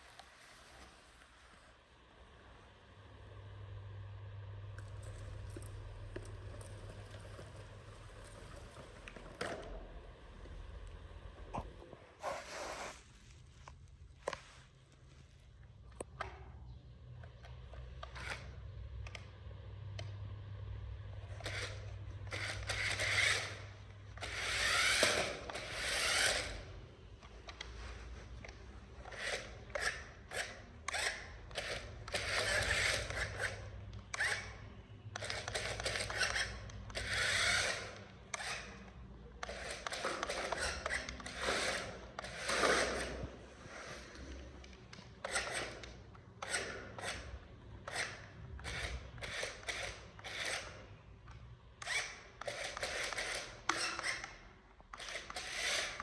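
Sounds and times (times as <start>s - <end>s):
plastic toy vehicles scraping: 0.0s - 1.8s, 4.8s - 10.0s, 21.3s - 34.6s, 39.4s - 47.3s.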